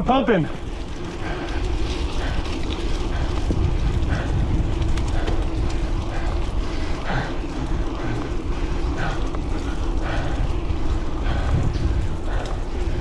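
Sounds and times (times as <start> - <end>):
mountain bike rolling: 0.0 - 13.0
steady low hum: 0.0 - 13.0
wind rumbling on microphone: 0.4 - 13.0.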